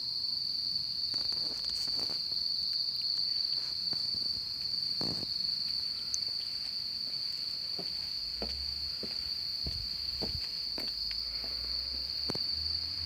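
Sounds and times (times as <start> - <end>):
insects calling: 0.0 - 13.0
soft low thumps: 8.3 - 11.0.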